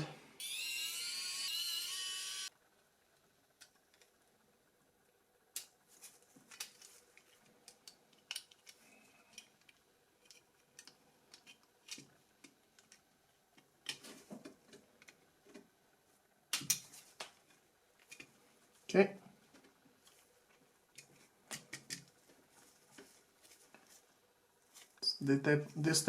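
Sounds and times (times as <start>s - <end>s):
tools and parts clicking: 7.7s - 12.1s.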